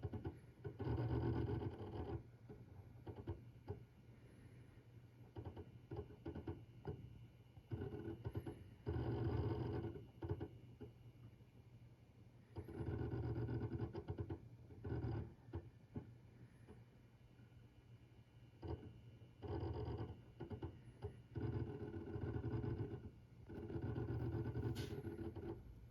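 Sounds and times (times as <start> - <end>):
hard drive clicks: 18.6 - 25.6.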